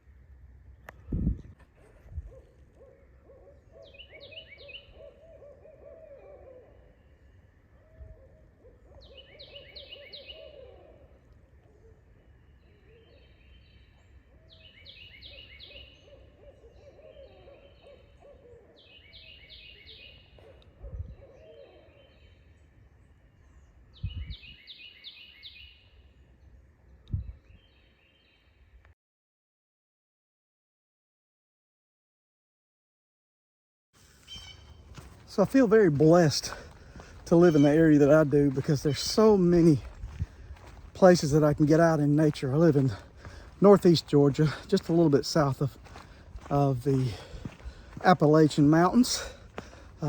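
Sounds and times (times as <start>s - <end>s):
owls hooting: 2.8s - 13.5s, 14.3s - 22.4s, 34.1s - 50.0s
high stepped bird call: 34.0s - 50.0s.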